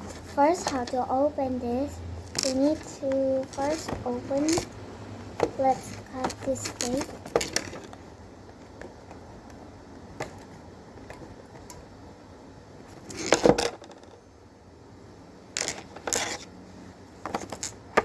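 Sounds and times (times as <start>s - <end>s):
box being handled: 5.4s - 8.0s.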